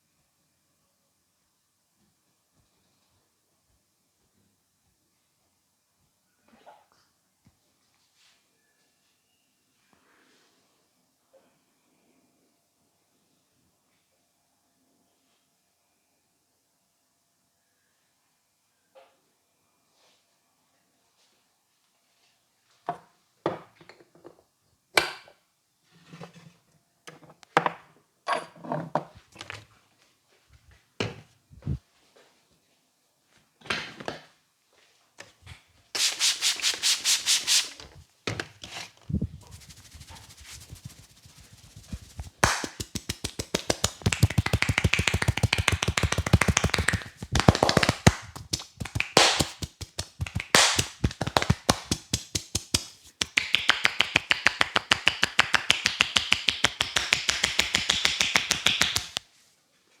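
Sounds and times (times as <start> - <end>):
hands slapping and rubbing scalp: 36.0 - 37.8, 39.2 - 59.2.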